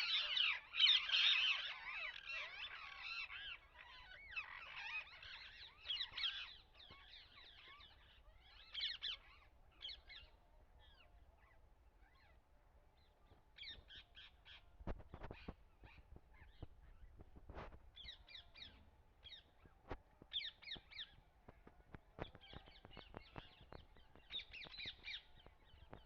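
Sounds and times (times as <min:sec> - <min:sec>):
parrots calling: 0:00.0 - 0:09.4.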